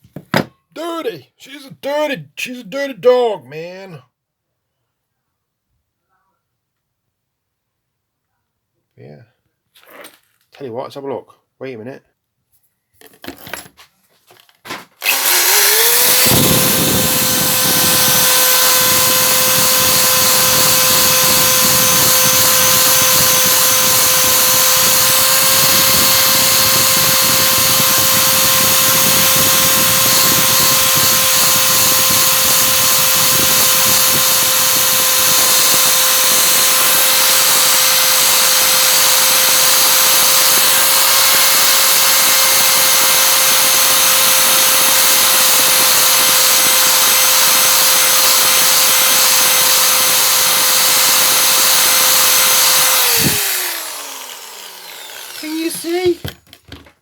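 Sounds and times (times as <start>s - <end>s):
handling knocks: 0.0s - 0.6s
electric drill whine: 15.0s - 56.9s.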